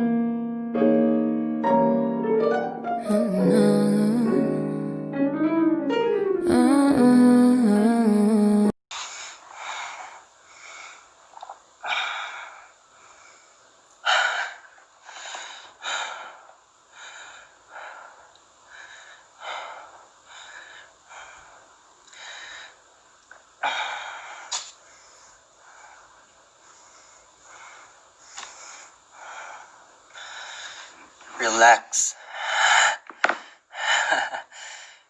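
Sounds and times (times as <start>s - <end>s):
man breathing heavily: 9.0s - 11.2s, 11.8s - 22.9s, 23.6s - 31.2s, 32.2s - 35.0s.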